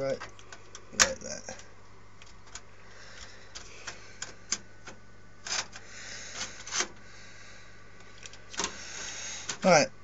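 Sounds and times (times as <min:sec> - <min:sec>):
metal parts scraping: 0:05.4 - 0:07.0.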